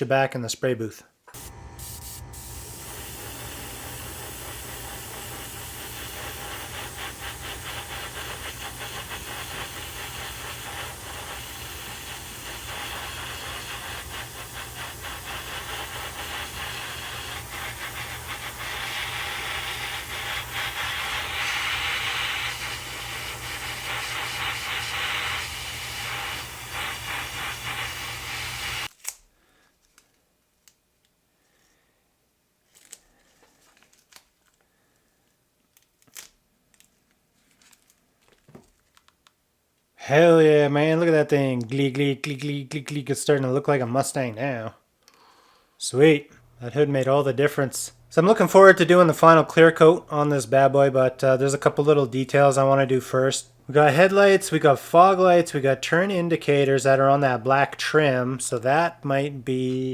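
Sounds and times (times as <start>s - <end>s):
airbrush spraying hiss: 1.3s - 28.9s.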